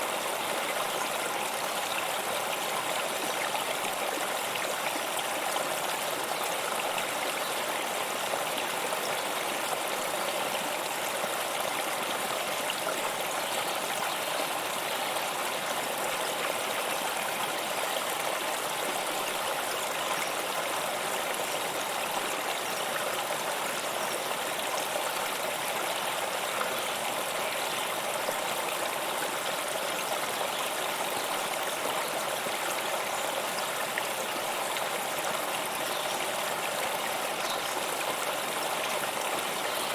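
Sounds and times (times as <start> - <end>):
waterfall pouring and splashing: 0.0 - 39.9.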